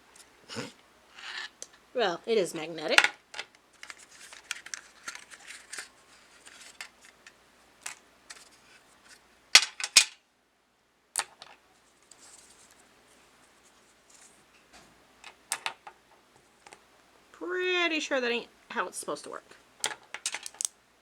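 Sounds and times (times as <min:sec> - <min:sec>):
magnetic pieces clicking: 0:19.8 - 0:20.8
magnetic pieces snapping together: 0:19.8 - 0:20.8.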